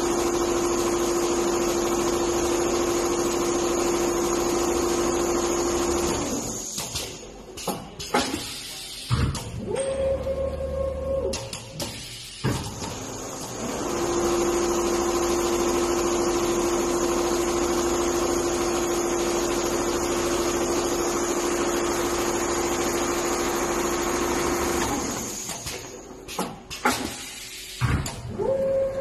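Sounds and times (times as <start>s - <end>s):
sewing machine motor hum: 0.0s - 6.6s, 12.7s - 25.5s.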